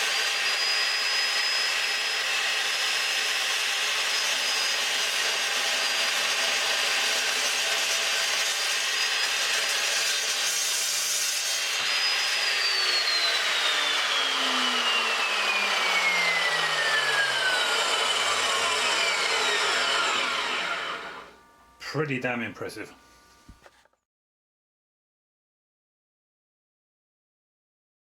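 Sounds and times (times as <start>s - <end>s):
chop saw grinding through steel: 0.0s - 21.4s.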